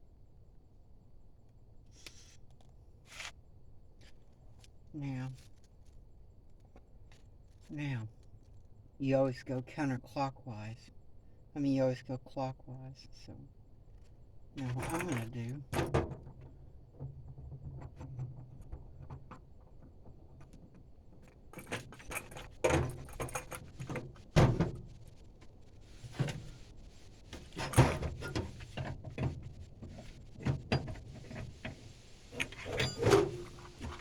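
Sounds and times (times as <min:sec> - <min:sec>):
metal tools clinking and knocking: 0:14.6 - 0:19.5, 0:20.2 - 0:24.3, 0:27.4 - 0:34.0.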